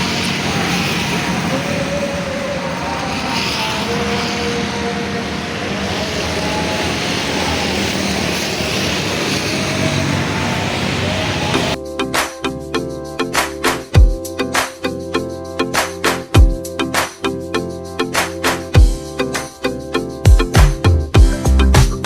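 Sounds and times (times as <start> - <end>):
engine hiss and rumble: 0.0 - 11.8.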